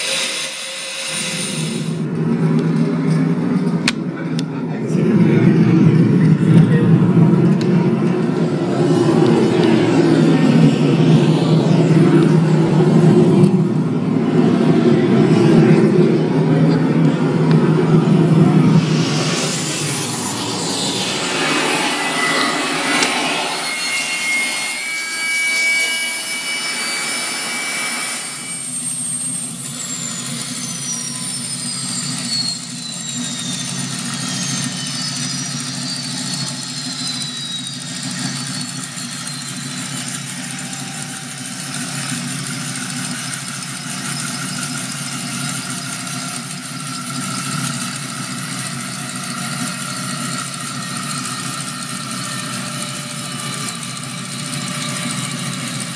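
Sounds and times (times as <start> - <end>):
toy jet engine sound effect: 0.0 - 2.0, 14.5 - 31.7
falling electronic whines: 0.0 - 4.2, 4.8 - 55.9.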